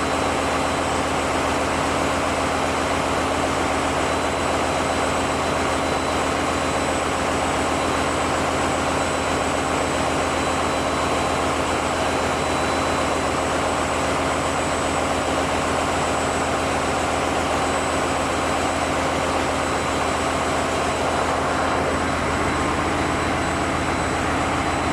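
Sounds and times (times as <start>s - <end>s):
diesel generators droning: 0.0s - 24.9s
high-pitched whine: 19.0s - 24.9s.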